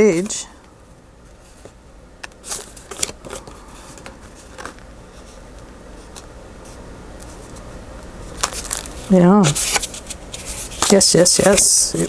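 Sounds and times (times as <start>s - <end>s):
paper rustling: 0.0s - 0.4s, 2.4s - 5.4s, 8.2s - 12.0s
faint background hum: 0.0s - 12.0s.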